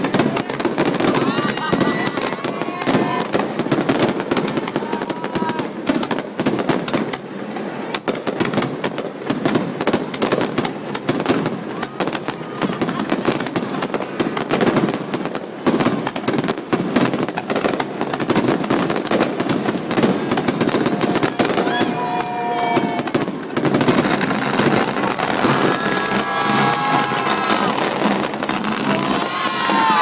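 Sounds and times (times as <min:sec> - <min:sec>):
fireworks bursting and crackling: 0:00.0 - 0:30.0
onlookers calling out: 0:00.1 - 0:03.4, 0:04.4 - 0:05.8, 0:20.7 - 0:30.0.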